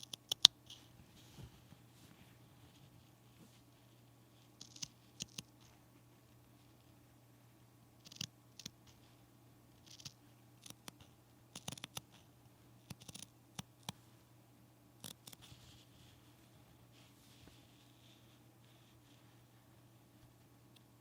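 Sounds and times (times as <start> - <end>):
faint steady hum: 0.0 - 21.0
scissors snipping: 9.8 - 12.1, 12.9 - 14.0.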